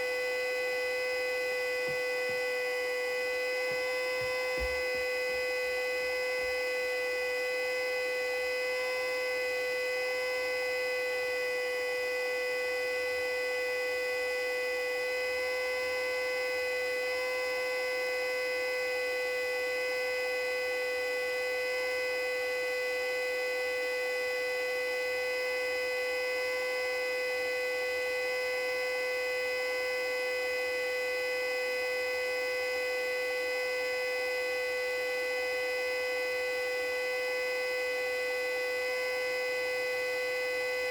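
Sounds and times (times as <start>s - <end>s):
siren steady chord: 0.0s - 40.9s.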